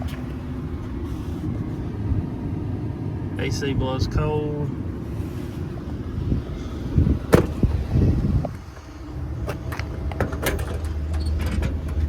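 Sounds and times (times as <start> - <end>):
truck engine idling: 0.0 - 3.3, 4.7 - 12.0
truck door shutting: 7.2 - 8.5, 9.4 - 12.0.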